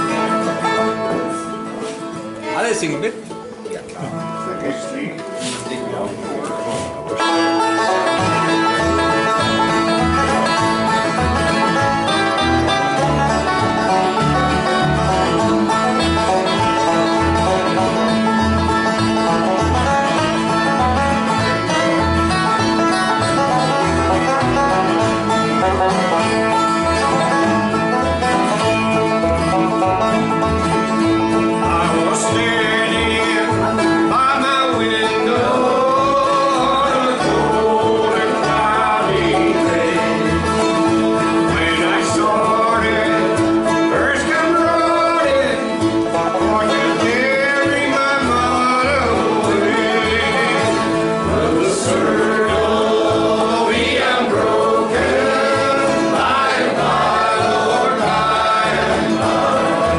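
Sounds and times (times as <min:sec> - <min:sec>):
bluegrass band playing: 0:00.0 - 0:59.9
person singing: 0:31.5 - 0:59.9.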